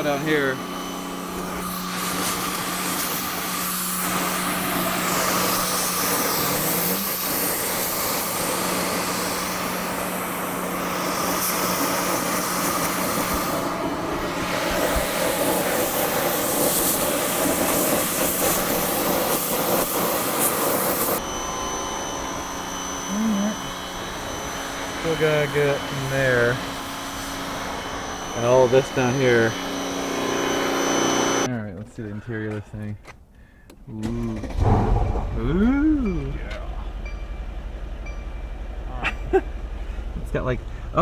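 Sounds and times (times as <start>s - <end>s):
pressure washer spray hiss: 0.0s - 21.2s
motor humming: 0.0s - 31.5s, 34.0s - 41.0s.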